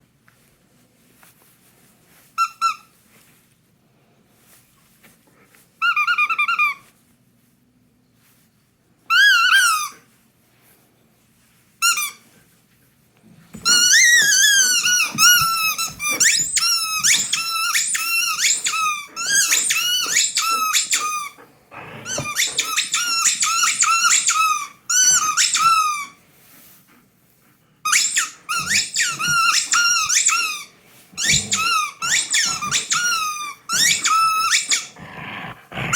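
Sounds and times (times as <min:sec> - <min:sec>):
squeaky dog toy squeaking: 0:02.4 - 0:02.9, 0:05.8 - 0:06.9, 0:09.1 - 0:10.0, 0:13.6 - 0:21.4, 0:22.0 - 0:26.2, 0:27.8 - 0:35.0.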